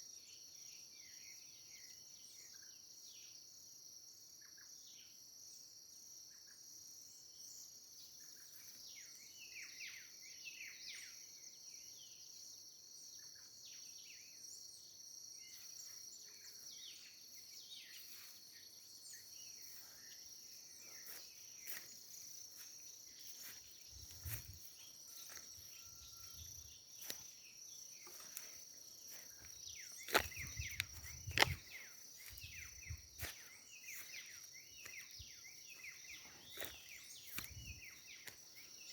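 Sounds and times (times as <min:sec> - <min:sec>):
insects droning: 0:00.0 - 0:38.9
birds chirping: 0:16.3 - 0:38.9.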